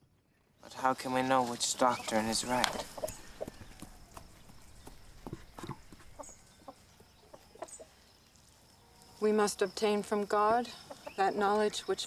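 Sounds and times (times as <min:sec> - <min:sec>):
hens clucking: 0:01.5 - 0:08.0, 0:10.3 - 0:12.0.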